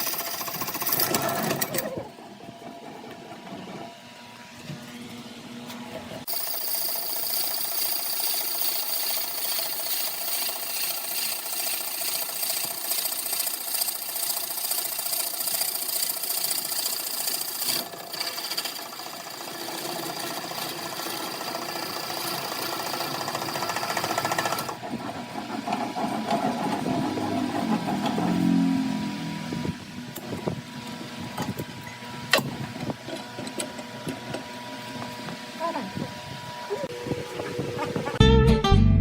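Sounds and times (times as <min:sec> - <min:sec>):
lathe tool rasping on wood: 0:06.3 - 0:24.8.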